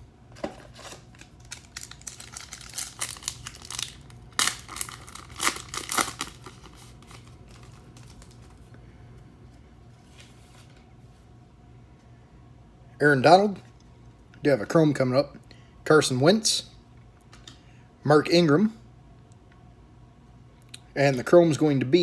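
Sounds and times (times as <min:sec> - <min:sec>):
wrapper tearing and crinkling: 0:00.6 - 0:08.6.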